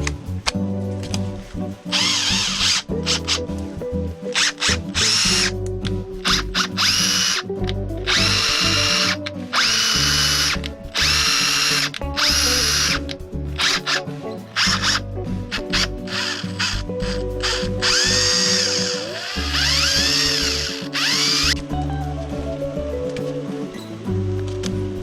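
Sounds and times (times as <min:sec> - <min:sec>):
impact driver motor whine: 0:15.8 - 0:21.6.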